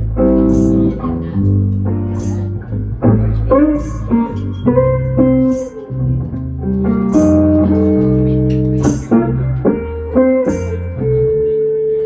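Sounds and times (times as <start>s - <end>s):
bass line: 0.0s - 11.6s
held guitar notes: 0.0s - 12.0s
cymbal crashes: 0.5s - 1.1s, 3.8s - 4.2s.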